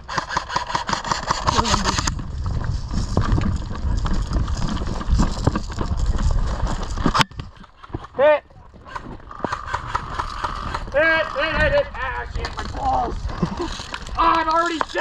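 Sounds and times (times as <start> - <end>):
fast rattle of sharp clicks: 0.0 - 2.2, 8.8 - 11.7
footsteps and gear thudding: 1.6 - 8.1.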